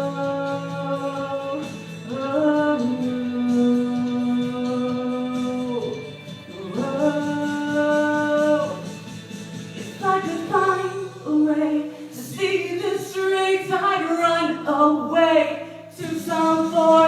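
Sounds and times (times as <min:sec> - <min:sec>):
woman singing long held notes: 0:00.0 - 0:08.8
musical accompaniment: 0:00.0 - 0:17.0.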